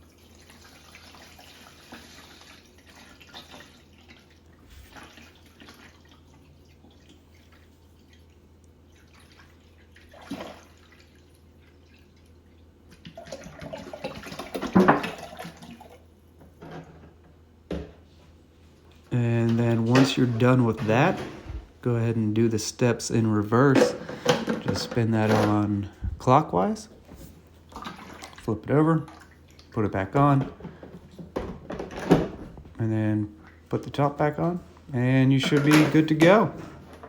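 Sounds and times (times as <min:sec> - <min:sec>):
water pouring into a tank: 0:00.0 - 0:16.0
water sloshing: 0:00.2 - 0:16.0, 0:23.6 - 0:32.3.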